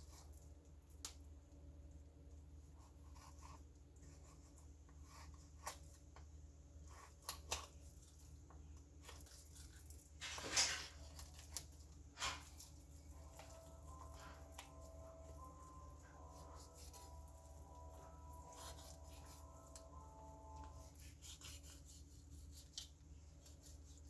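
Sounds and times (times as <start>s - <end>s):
knife scraping meat: 2.7s - 6.0s, 12.2s - 24.0s.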